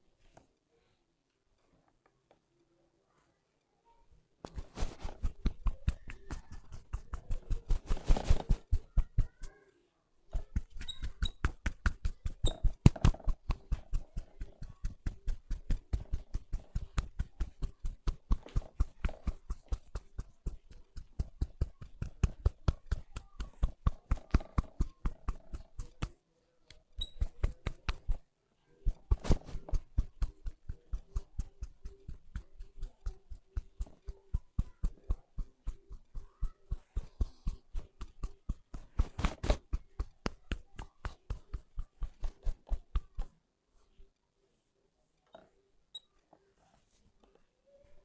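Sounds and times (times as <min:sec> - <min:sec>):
hands tapping on head: 0:04.5 - 0:09.5, 0:10.4 - 0:26.2, 0:27.0 - 0:28.2, 0:28.9 - 0:43.4.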